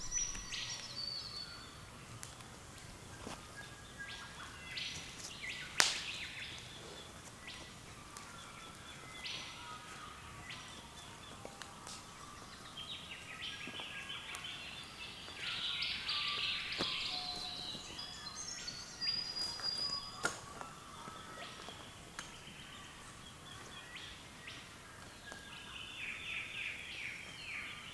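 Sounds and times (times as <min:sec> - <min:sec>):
birds calling and chirping: 0:00.0 - 0:27.9
sharp crack: 0:05.8 - 0:06.4.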